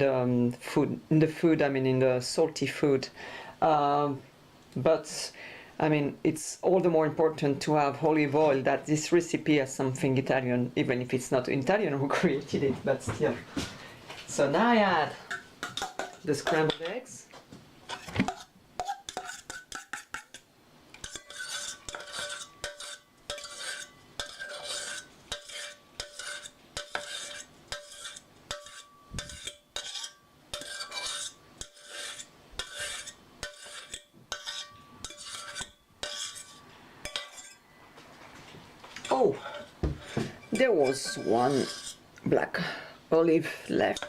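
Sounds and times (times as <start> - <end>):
utensil scraping and clinking bowl: 15.1 - 17.0, 17.9 - 37.7, 39.0 - 42.0, 43.8 - 44.0.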